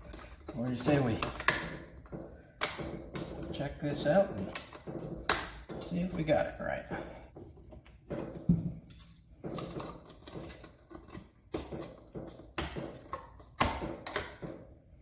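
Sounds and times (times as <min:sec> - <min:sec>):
handling clicks and rustling: 0:00.0 - 0:06.5.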